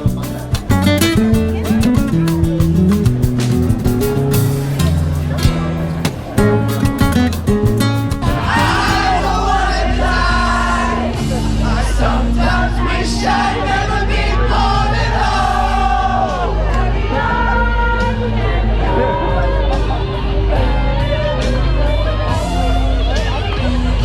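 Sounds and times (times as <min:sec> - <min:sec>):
held bass notes: 0:00.0 - 0:24.0
voices singing together: 0:08.1 - 0:23.7.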